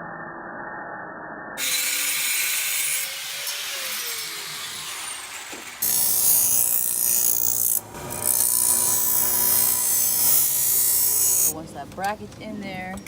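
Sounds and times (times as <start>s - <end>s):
power tool cutting steel: 1.6s - 11.6s.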